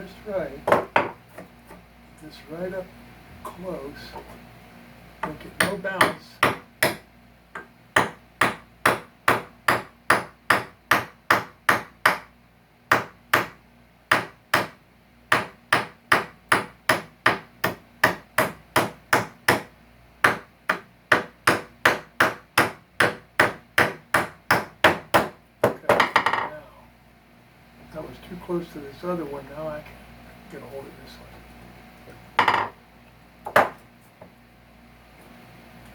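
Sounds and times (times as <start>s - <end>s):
hammer tapping metal tool: 32.4s - 32.8s.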